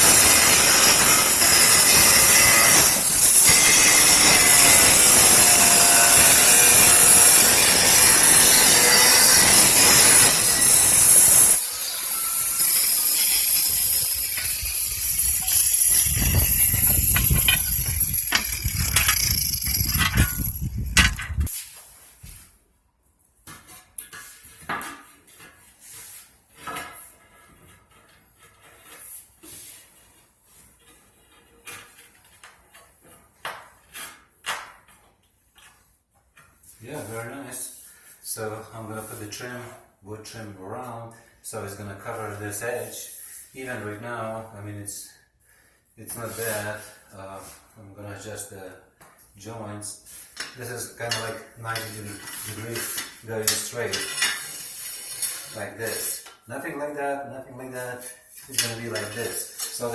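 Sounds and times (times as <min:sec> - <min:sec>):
angle grinder cutting tile: 0:00.0 - 0:21.5, 0:51.0 - 0:56.3.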